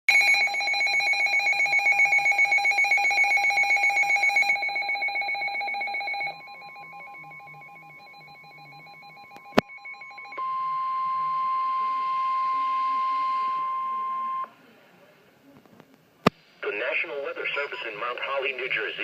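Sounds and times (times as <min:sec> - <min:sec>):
pulsing two-tone alarm beeping: 0:00.1 - 0:14.5.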